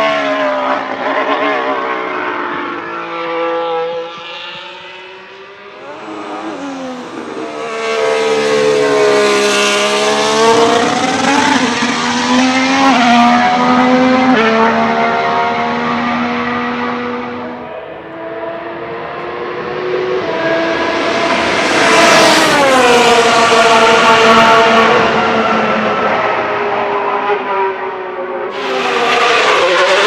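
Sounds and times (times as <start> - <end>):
racing car engine passing: 0.4 - 30.0.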